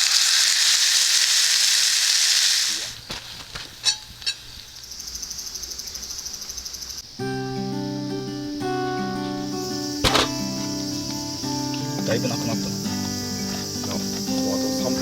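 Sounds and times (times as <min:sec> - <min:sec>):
steak sizzling in frying pan: 0:00.0 - 0:03.0
music: 0:07.2 - 0:15.0.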